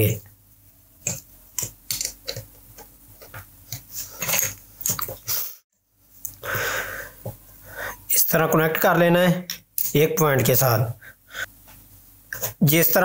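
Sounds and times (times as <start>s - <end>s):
clicks and taps of wiring work: 1.0s - 5.2s.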